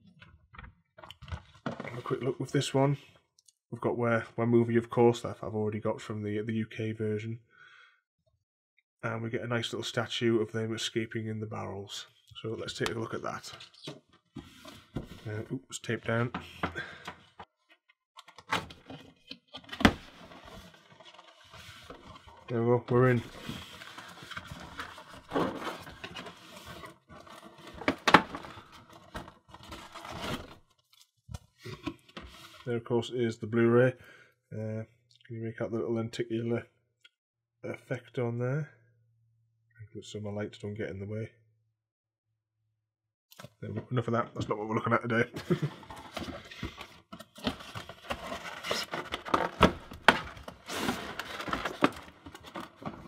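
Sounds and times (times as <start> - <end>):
packaging rustling: 18.7 - 31.0, 45.5 - 53.0
packaging being handled: 18.8 - 31.1, 45.5 - 53.0
cardboard box scraping and rustling: 45.8 - 53.0.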